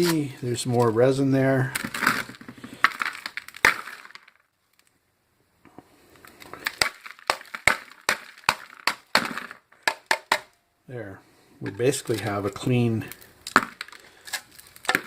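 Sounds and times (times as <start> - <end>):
resin cracking and knocking: 1.7 - 4.9, 6.2 - 10.6, 11.9 - 15.0.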